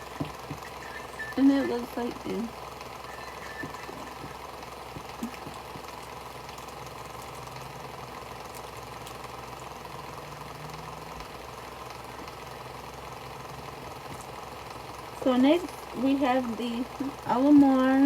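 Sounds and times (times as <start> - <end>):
mechanical hum: 0.0 - 18.0.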